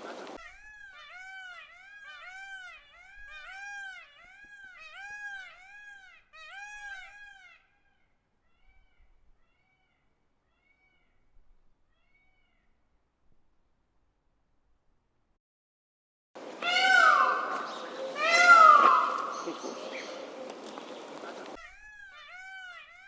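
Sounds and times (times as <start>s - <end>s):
peacock calling: 0.0s - 0.4s, 16.4s - 21.6s.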